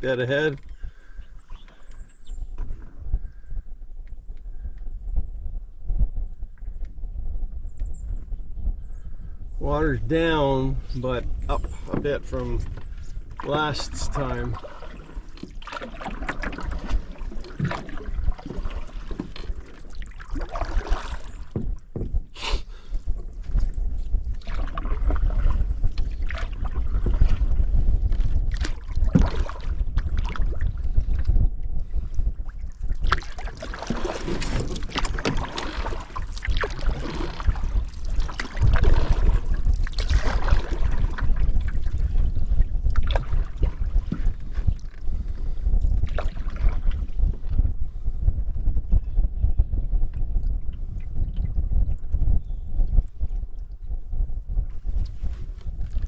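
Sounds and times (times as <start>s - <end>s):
wind noise on microphone: 0.0s - 56.0s
paddle strokes splashing: 11.5s - 31.4s, 32.2s - 45.3s.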